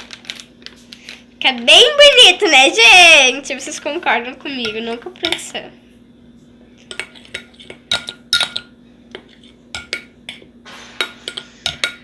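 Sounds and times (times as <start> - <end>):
spoon clinking against bowl: 6.9 - 8.7.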